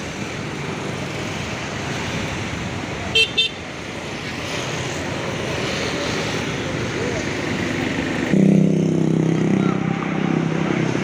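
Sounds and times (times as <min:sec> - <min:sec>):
engine and traffic rumble: 0:00.0 - 0:11.0.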